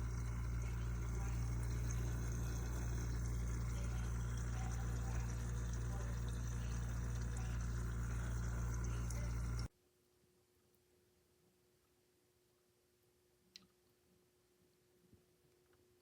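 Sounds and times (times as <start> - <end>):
small pump humming: 0.0 - 9.7
water trickling in a fountain: 0.0 - 9.7.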